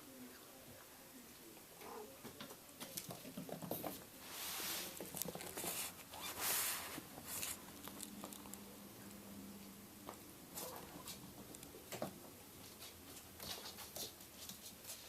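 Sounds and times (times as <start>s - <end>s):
kitten paws pattering: 4.7s - 8.6s, 10.0s - 15.0s.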